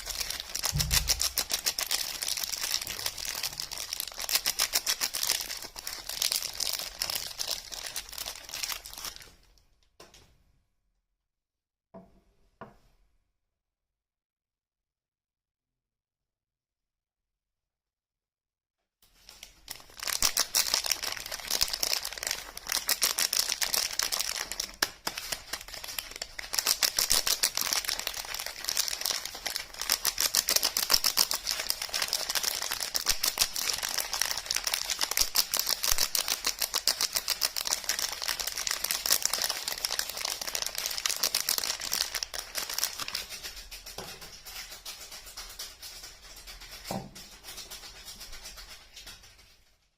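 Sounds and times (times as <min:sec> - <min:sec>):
packaging crinkling and clicking: 0:00.0 - 0:09.4, 0:19.3 - 0:49.4.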